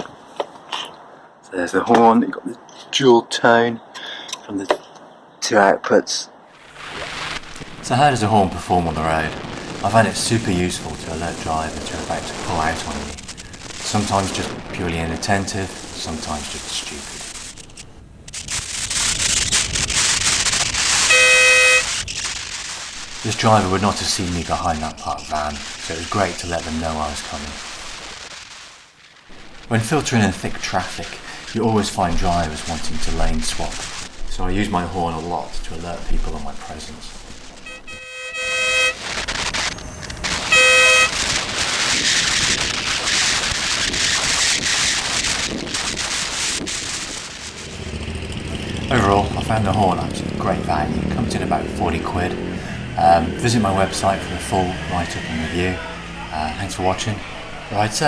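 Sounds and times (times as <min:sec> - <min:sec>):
wind and road noise: 0:06.3 - 0:28.3, 0:29.3 - 0:58.0
air horn blast: 0:21.0 - 0:22.0, 0:37.6 - 0:39.2, 0:40.4 - 0:41.4, 0:48.6 - 0:57.9.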